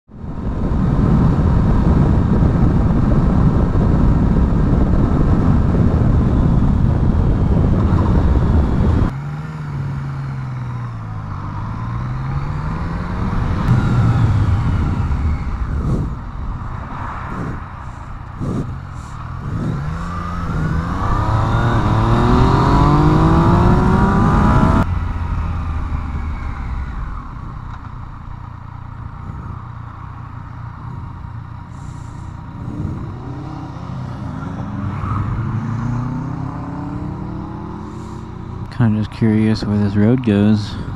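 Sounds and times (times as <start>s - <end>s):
motorcycle engine revving: 0.8s - 40.9s
loud rushing noise: 12.9s - 27.5s.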